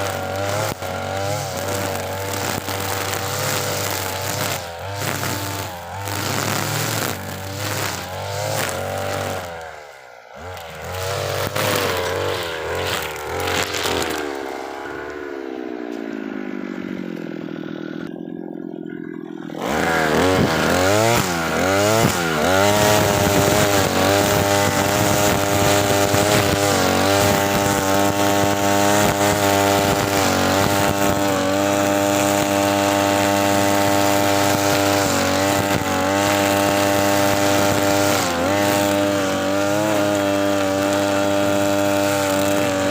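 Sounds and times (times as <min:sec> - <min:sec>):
brush cutter engine revving: 0:00.0 - 0:42.9.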